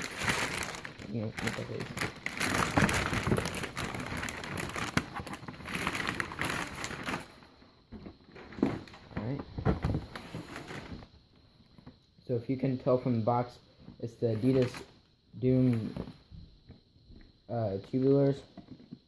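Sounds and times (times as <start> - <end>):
paper packing crinkling: 0.0 - 7.4, 9.8 - 11.1, 14.3 - 14.9.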